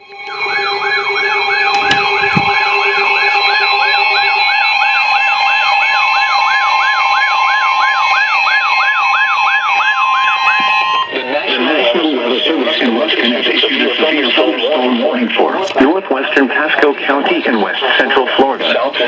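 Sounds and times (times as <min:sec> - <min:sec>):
whooping siren alarm: 0:00.0 - 0:19.0
clicks: 0:01.7 - 0:02.7.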